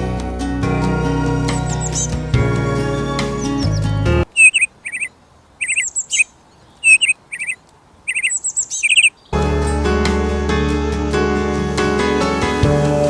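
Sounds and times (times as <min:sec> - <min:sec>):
background music: 0:00.0 - 0:04.3, 0:09.4 - 0:13.0
bird chirping: 0:01.5 - 0:02.4, 0:03.2 - 0:09.4.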